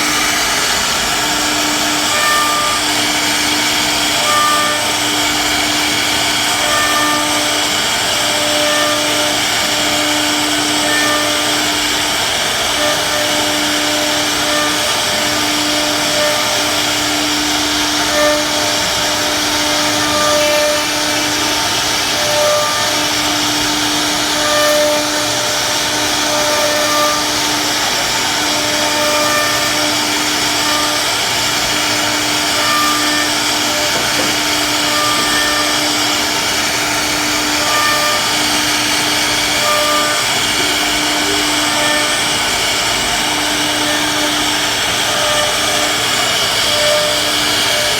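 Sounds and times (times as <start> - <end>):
humming tone: 0.0 - 47.9
wood router running: 0.0 - 47.9.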